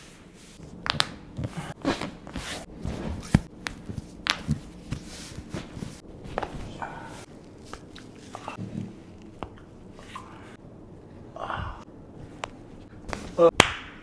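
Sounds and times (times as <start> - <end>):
rustling and rubbing: 0.0 - 9.2.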